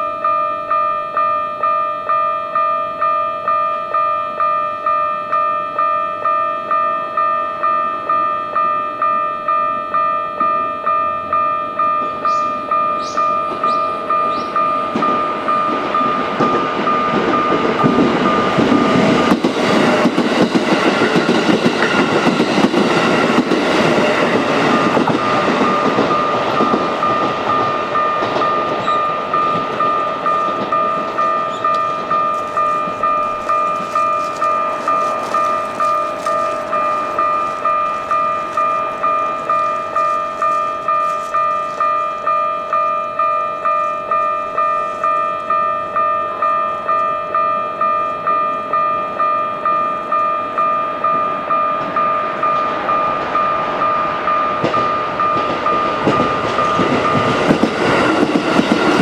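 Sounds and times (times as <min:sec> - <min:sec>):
electric train rumbling past: 0:00.0 - 0:59.0
level crossing bell ringing: 0:24.1 - 0:57.4.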